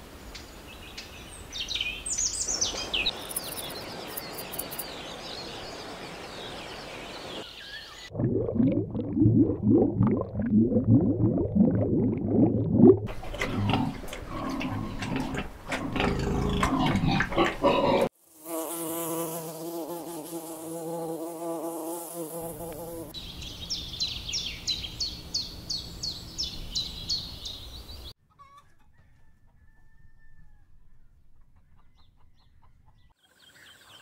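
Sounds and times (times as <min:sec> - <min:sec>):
insect wings buzzing: 0:18.1 - 0:23.1.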